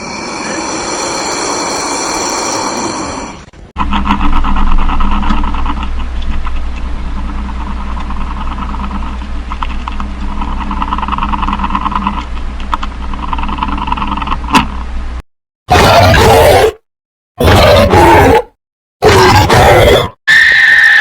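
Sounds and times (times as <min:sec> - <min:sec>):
steady low hum: 0:00.0 - 0:15.2.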